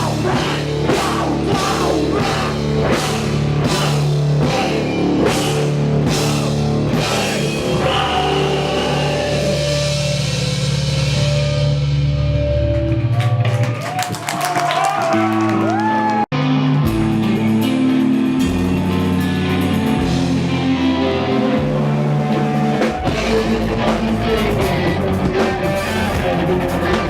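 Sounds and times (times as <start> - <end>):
heavy rock band playing: 0.0 - 27.0.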